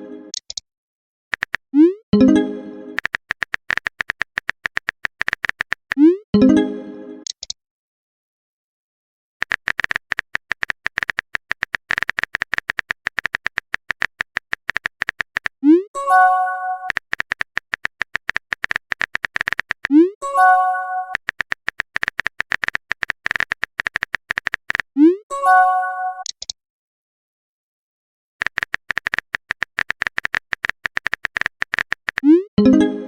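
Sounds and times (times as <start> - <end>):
phone keyboard typing clicks: 1.3 - 1.7, 3.0 - 6.0, 7.2 - 7.6, 9.4 - 15.6, 16.8 - 20.1, 21.1 - 25.0, 28.4 - 32.4.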